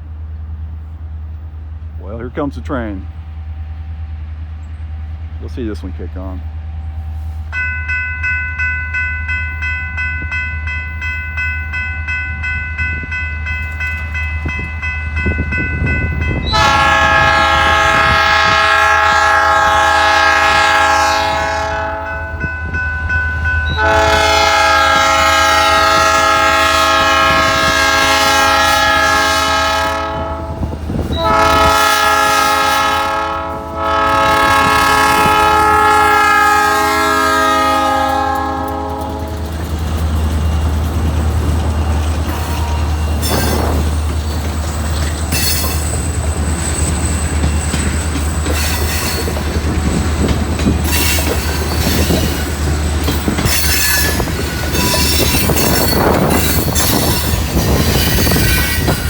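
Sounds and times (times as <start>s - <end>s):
crossing warning bell ringing: 7.2s - 59.0s
locomotive air horn blasts: 16.4s - 22.4s, 23.7s - 39.6s.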